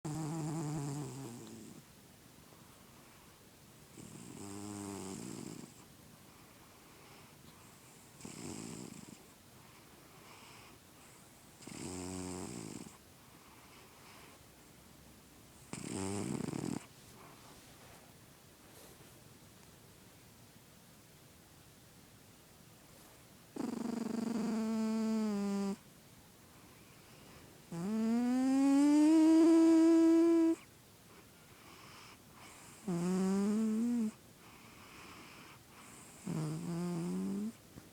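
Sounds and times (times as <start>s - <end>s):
cat snoring: 0.1s - 1.8s, 3.9s - 5.8s, 7.0s - 9.3s, 10.2s - 14.4s, 15.6s - 16.9s, 23.6s - 25.8s, 27.7s - 30.7s, 31.6s - 37.6s
soft breaths: 0.1s - 4.4s, 5.1s - 11.8s, 12.4s - 20.0s, 22.7s - 29.5s, 30.2s - 32.9s, 33.6s - 37.9s.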